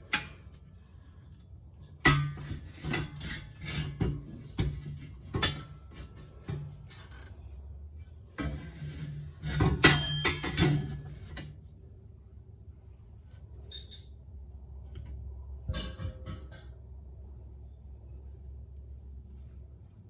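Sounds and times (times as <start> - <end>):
metal tools clanking: 9.6 - 11.2, 13.6 - 14.2.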